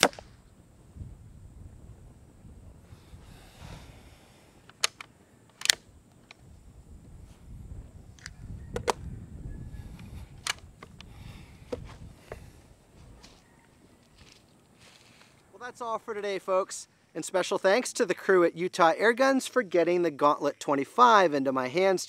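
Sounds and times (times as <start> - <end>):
air rifle action clicking: 0.0 - 0.4, 4.6 - 6.4, 8.1 - 9.0, 9.9 - 12.4.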